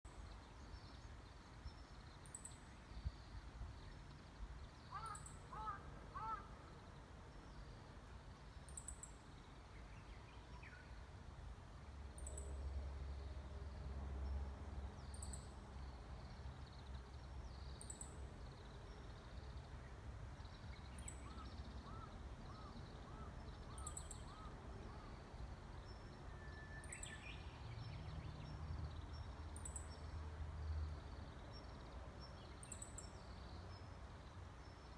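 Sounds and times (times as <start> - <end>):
faint birdsong: 0.1 - 11.3, 12.0 - 34.9.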